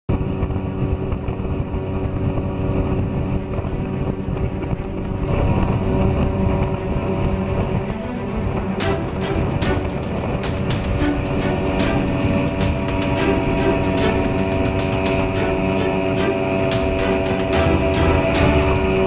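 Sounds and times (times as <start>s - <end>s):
motorboat engine running: 0.1s - 19.0s
wind rumbling on microphone: 0.1s - 19.0s.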